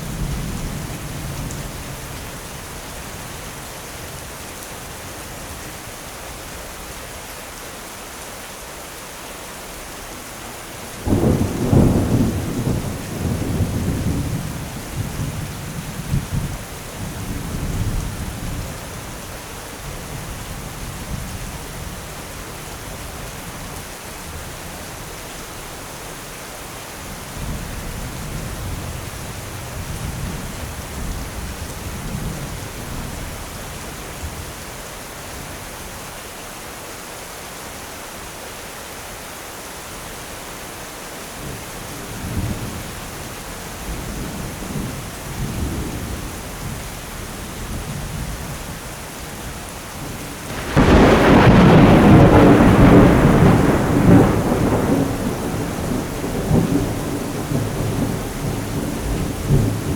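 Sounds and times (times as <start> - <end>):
steady rain: 0.0 - 59.9
loud thunderclap: 11.0 - 16.5, 50.5 - 59.9
low thunder rumbling: 11.0 - 18.7, 49.4 - 59.9.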